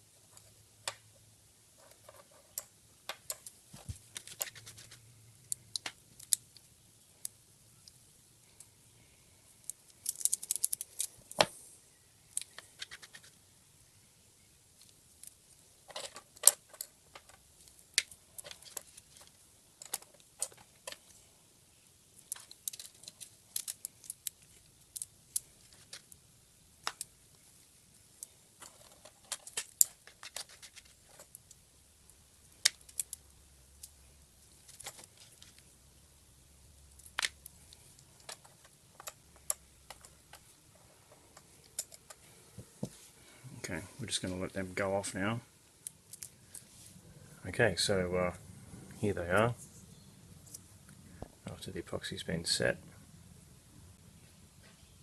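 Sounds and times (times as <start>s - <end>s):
plastic parts clicking and tapping: 9.6s - 11.5s, 22.2s - 26.2s, 28.6s - 31.6s, 36.9s - 40.5s.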